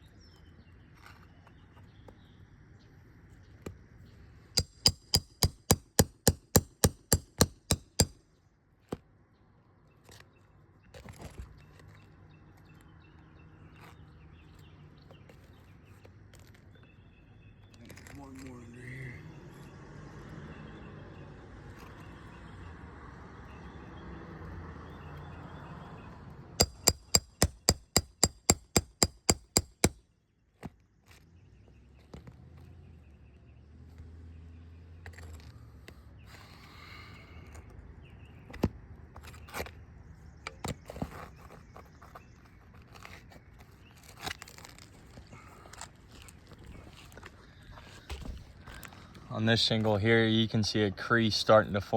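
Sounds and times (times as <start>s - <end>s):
hammer strikes on metal: 4.6s - 8.2s, 26.6s - 30.0s.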